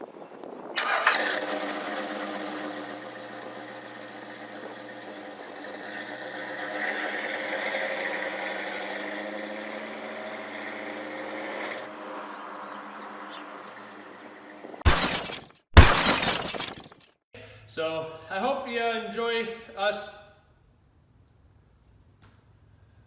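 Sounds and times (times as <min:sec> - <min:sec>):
engine running and revving: 0:00.8 - 0:14.8.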